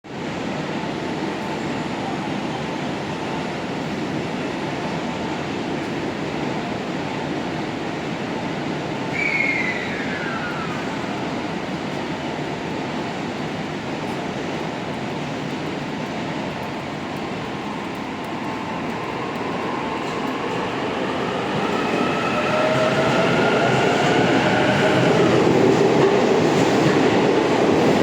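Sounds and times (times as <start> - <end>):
electric train rolling rumble: 0.1 - 28.0
brief falling squeal: 9.1 - 11.1.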